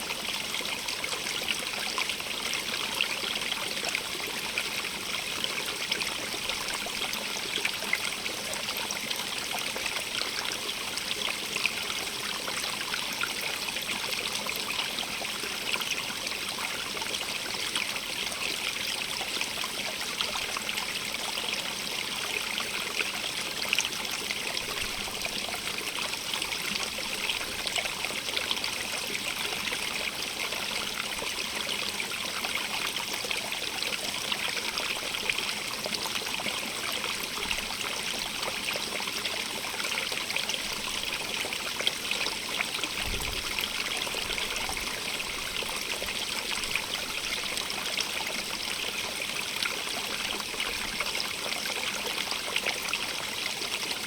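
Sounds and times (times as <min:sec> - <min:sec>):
running water trickling: 0:00.5 - 0:54.0.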